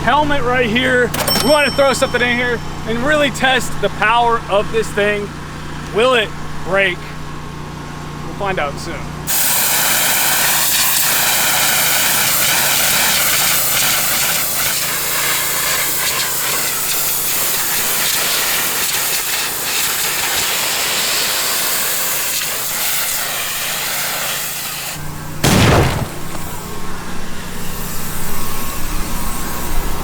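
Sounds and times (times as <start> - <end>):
pressure washer water jet hissing: 9.3 - 25.0.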